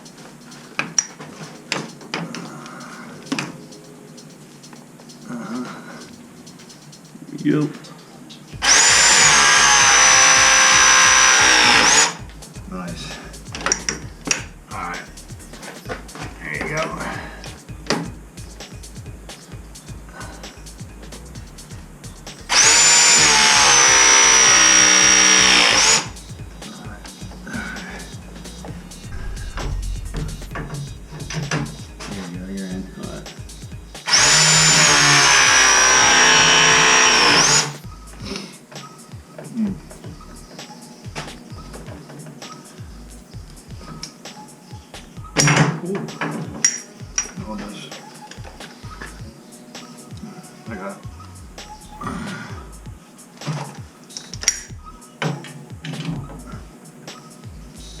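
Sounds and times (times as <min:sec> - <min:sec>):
background music with steady beat: 0:00.0 - 0:58.0
press tool motor whine: 0:08.6 - 0:12.2, 0:22.5 - 0:26.1, 0:34.1 - 0:37.8.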